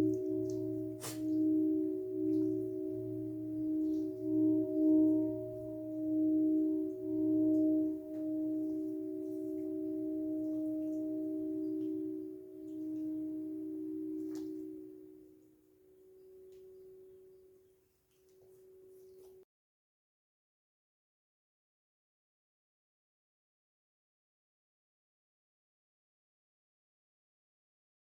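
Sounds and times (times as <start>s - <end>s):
crystal singing bowls ringing: 0.0s - 17.7s, 18.5s - 19.4s.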